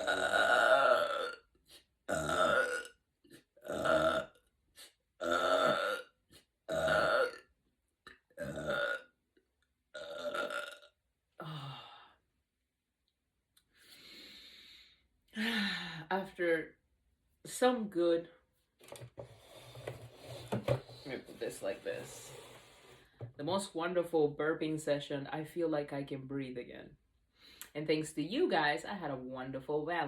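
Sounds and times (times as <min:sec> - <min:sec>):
woman burping: 0:00.0 - 0:01.4, 0:02.1 - 0:03.0, 0:03.6 - 0:04.4, 0:05.2 - 0:06.1, 0:06.7 - 0:07.5, 0:08.4 - 0:09.1, 0:10.0 - 0:11.7.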